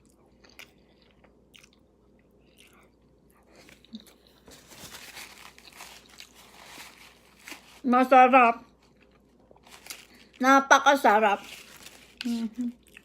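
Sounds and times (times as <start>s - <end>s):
person chewing food: 0.0s - 4.5s, 5.5s - 7.4s, 11.8s - 13.0s.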